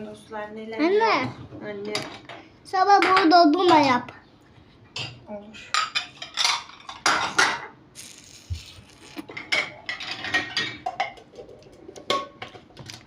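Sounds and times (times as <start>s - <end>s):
dishes and glassware clinking: 4.9s - 7.8s, 9.3s - 12.7s.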